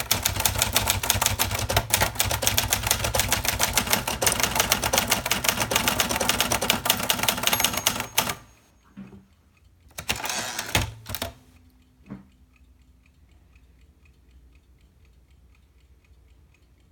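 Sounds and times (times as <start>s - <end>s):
typewriter keystrokes: 0.0s - 8.5s, 9.9s - 11.4s
typewriter clunk: 10.0s - 11.4s.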